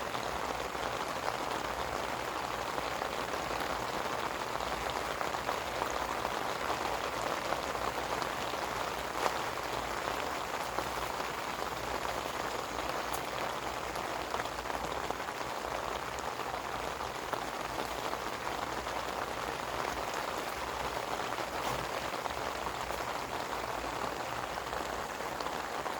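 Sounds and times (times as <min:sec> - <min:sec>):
steady rain falling: 0:00.0 - 0:25.9
raindrop hits: 0:04.5 - 0:25.6.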